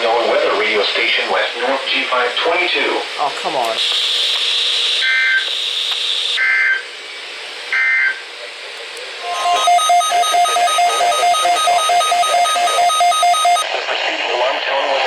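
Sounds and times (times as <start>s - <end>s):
data chirps: 9.2s - 13.6s
electronic alarm beeping rapidly: 9.2s - 13.6s
steady high whine: 9.2s - 13.6s.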